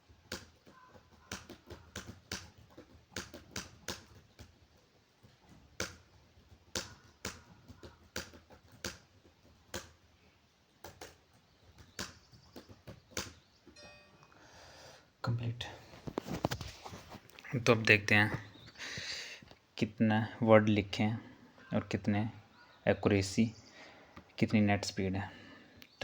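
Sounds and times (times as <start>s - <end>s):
laptop keyboard typing: 0.0s - 13.5s.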